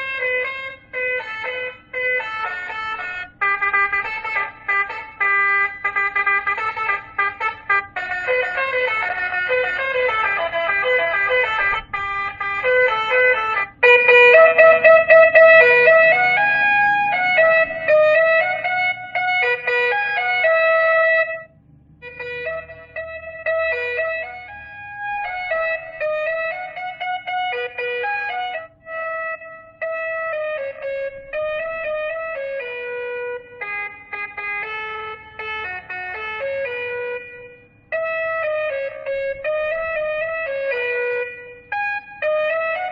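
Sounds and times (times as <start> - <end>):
electronic horn playing melody: 0.0 - 42.9.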